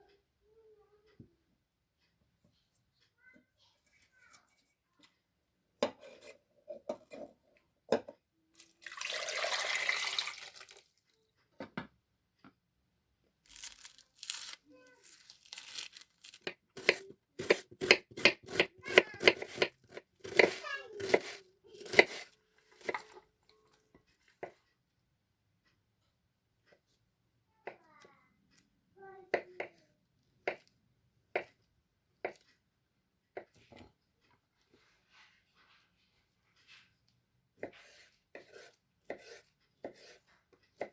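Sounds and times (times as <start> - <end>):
kitchen tap running: 8.6 - 11.0.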